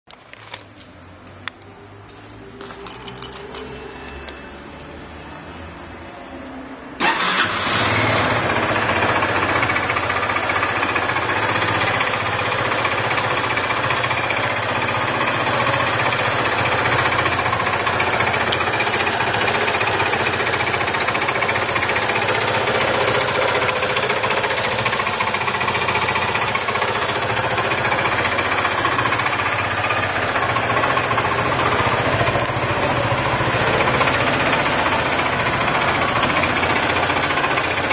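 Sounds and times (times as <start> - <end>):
motorcycle engine idling: 8.2 - 37.9.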